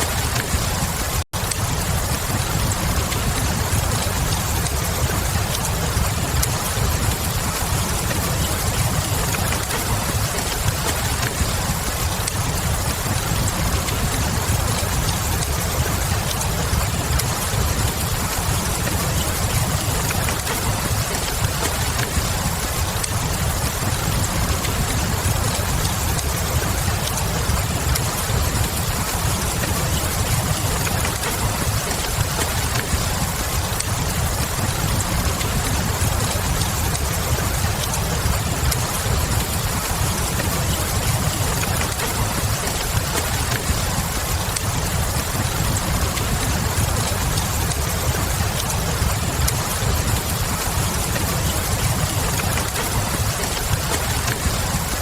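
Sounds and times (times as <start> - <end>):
steady rain: 0.0 - 55.0
wood fire crackling: 0.0 - 55.0.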